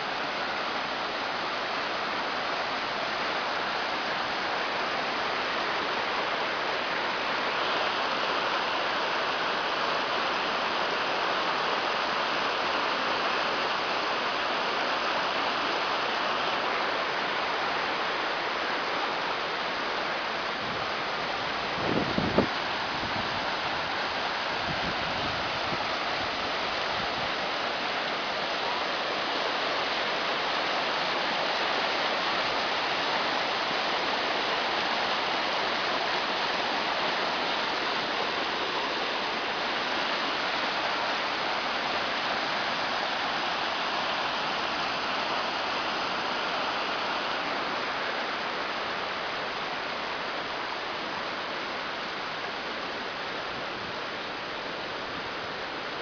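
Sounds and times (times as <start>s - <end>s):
floodwater rushing: 0.0s - 56.0s.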